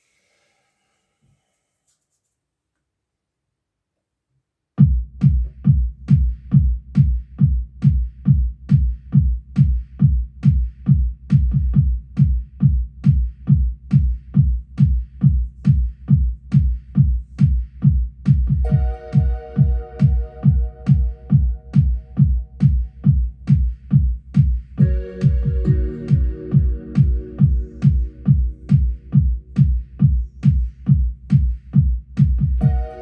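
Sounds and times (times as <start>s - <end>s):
deep kick drum beat: 4.8s - 33.0s
sustained synth chord: 24.8s - 29.5s.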